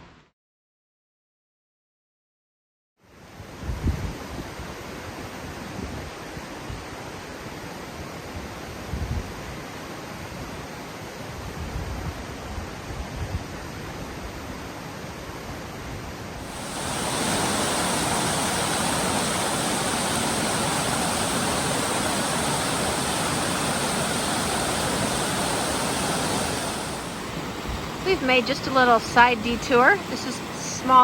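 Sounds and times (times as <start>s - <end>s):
river water rushing: 16.4s - 31.0s.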